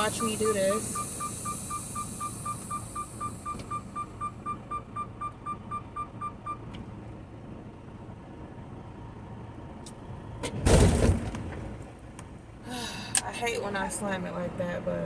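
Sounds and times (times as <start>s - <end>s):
reverse warning beeper: 0.0s - 6.6s
diesel engine idling: 0.0s - 10.4s, 11.8s - 15.0s
trailer coupling bang: 10.4s - 11.7s.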